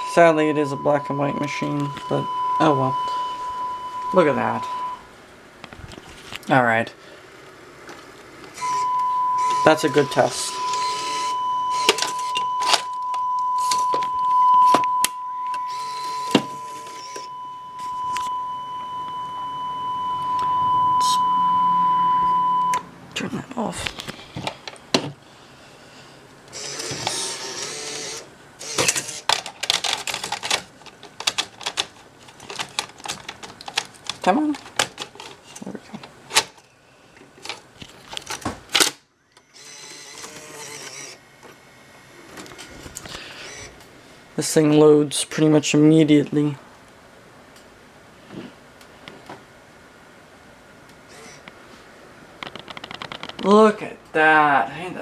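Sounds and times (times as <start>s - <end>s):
steady test tone: 0.0s - 5.1s, 8.6s - 23.7s
tape transport whirring: 7.4s - 25.1s, 26.4s - 43.9s, 50.8s - 51.6s.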